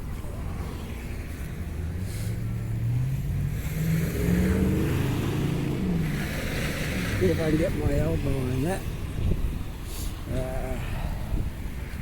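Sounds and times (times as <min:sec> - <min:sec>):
low traffic rumble: 0:00.0 - 0:12.0
vehicle engine accelerating: 0:00.3 - 0:08.1.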